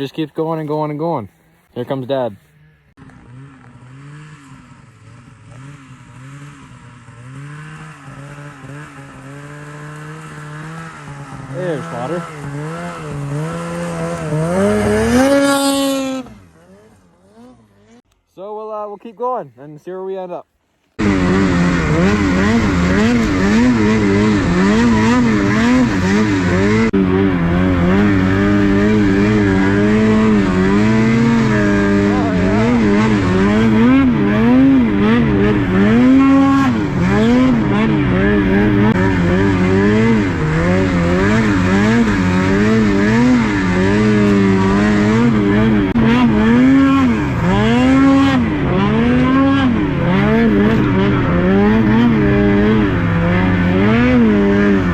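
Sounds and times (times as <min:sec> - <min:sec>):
snowmobile engine revving: 0:00.0 - 0:54.9.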